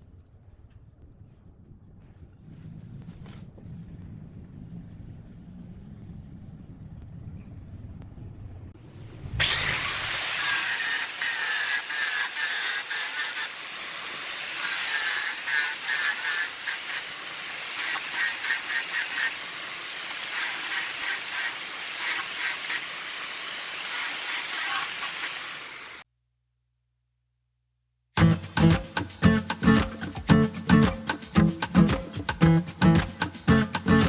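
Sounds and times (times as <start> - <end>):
wood lathe hissing: 9.4 - 26.0.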